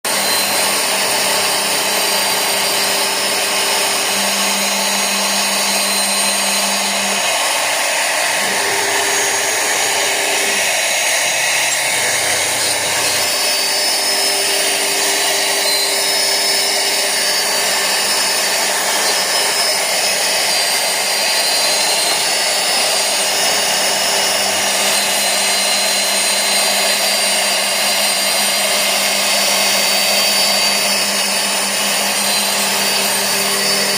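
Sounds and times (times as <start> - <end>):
cnc router spindle whining: 0.0 - 33.9
machine moving low tones: 3.5 - 16.0.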